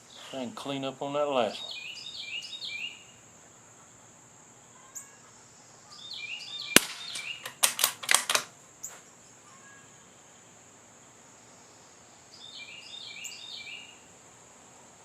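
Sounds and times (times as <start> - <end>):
suppressed rifle shot: 6.7 - 8.5
rifle bolt metallic clicks: 6.8 - 8.5.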